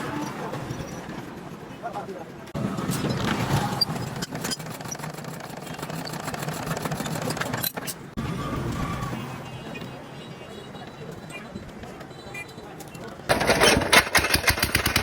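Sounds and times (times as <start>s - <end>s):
small diesel engine knocking: 4.4s - 7.5s, 13.3s - 15.0s.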